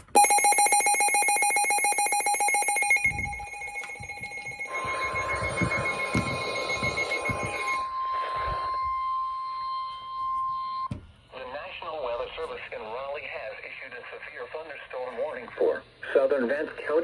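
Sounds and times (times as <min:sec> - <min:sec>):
rapidly pulsing alarm beep: 0:00.1 - 0:10.9
steady alarm tone: 0:00.1 - 0:10.9.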